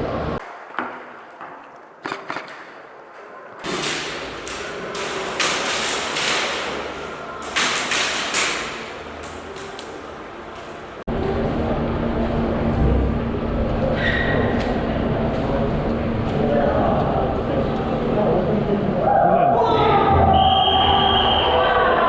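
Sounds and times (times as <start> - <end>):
rustling movement noise: 3.1 - 11.1.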